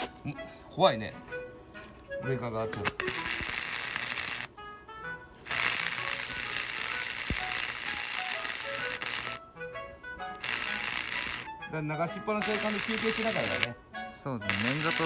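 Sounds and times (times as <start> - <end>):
background music: 0.0 - 15.0
welding arc crackling: 2.8 - 4.5, 5.4 - 9.4, 10.4 - 11.5, 12.4 - 13.8, 14.5 - 15.0.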